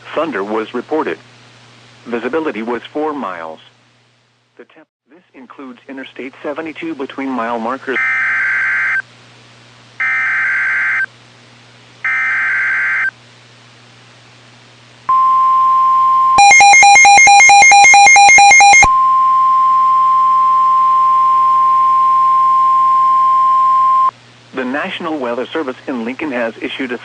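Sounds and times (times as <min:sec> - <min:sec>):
rapidly pulsing electronic beeping: 0:16.4 - 0:18.9
steady alert tone: 0:16.4 - 0:19.1.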